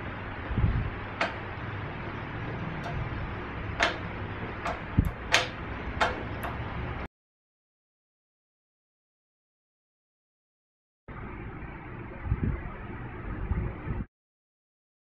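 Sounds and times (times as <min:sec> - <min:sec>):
machine hum: 0:00.0 - 0:07.1, 0:11.1 - 0:14.1.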